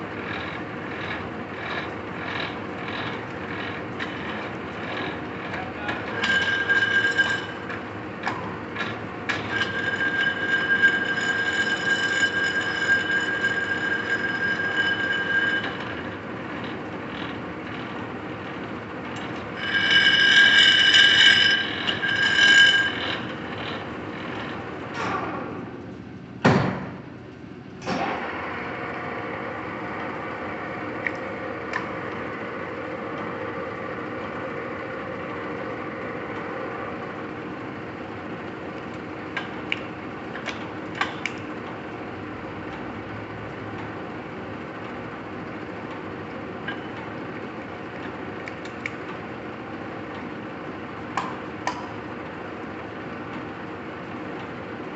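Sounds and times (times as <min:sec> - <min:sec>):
lathe high whine: 0:00.0 - 0:24.9
lathe gear hum: 0:00.0 - 0:26.0, 0:28.0 - 0:54.9
lathe clunk: 0:05.9 - 0:18.0, 0:19.1 - 0:25.6.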